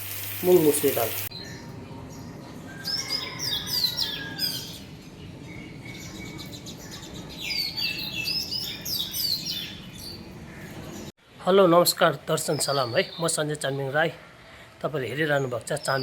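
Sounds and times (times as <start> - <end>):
small birds chirping: 0.4 - 11.2.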